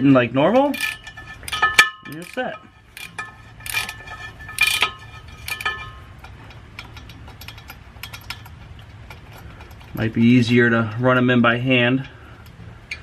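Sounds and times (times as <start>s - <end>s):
ringing metallic clinks: 0.7s - 8.6s
ratchet clicking: 0.7s - 10.1s.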